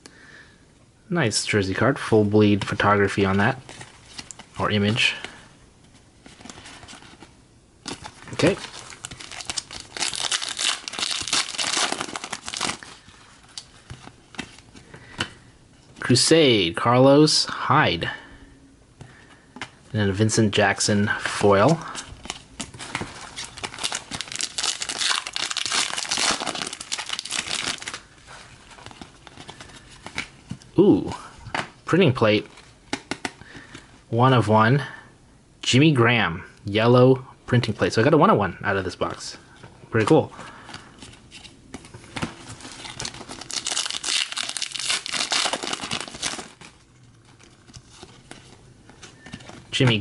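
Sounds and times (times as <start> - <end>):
foil wrapper crinkling: 7.9 - 13.9, 21.8 - 30.3, 42.2 - 49.6.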